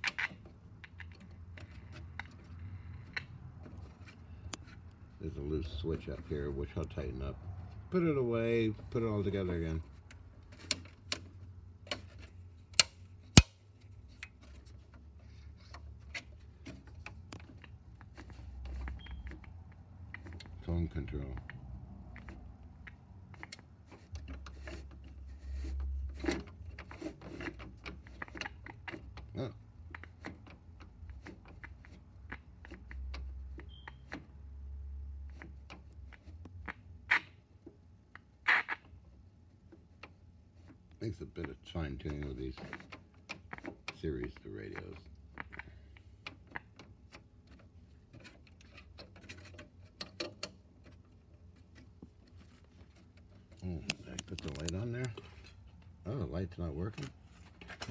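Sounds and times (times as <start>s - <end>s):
tools clicking on metal parts: 53.9s - 55.2s.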